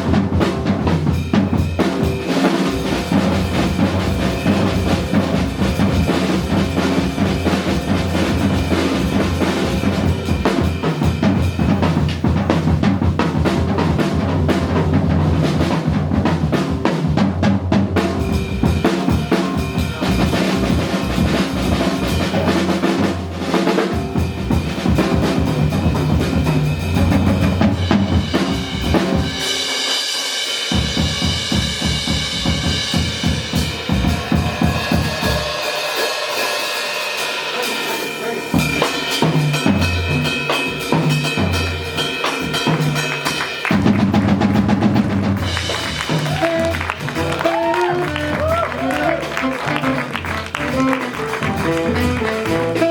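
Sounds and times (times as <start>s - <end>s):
drum kit and cymbals: 0.0s - 52.9s
jazz band playing: 0.0s - 52.9s.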